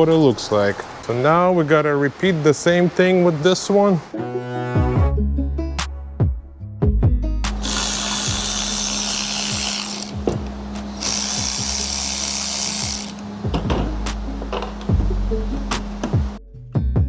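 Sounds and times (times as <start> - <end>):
music with steady bass beat: 4.8 - 8.7, 13.4 - 17.0
power drill driving screws: 7.6 - 13.2.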